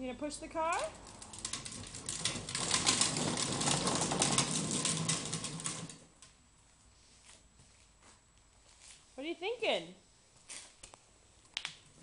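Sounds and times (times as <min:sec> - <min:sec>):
toy car rattling on ground: 0:00.6 - 0:06.3.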